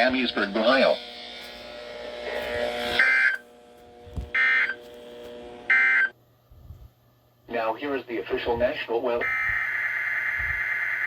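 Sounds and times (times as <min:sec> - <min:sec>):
buzzy digital data tones: 0:00.0 - 0:03.7, 0:04.3 - 0:04.9, 0:09.2 - 0:11.0.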